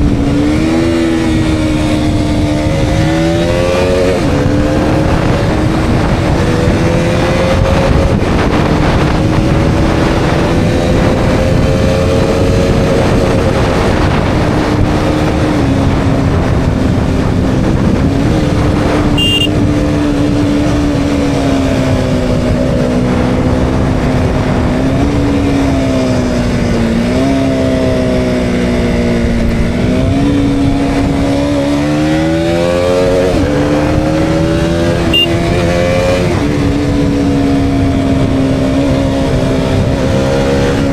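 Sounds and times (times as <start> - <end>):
motorcycle engine revving: 0.0 - 40.9
high-pitched beep: 19.2 - 19.6, 35.1 - 35.4.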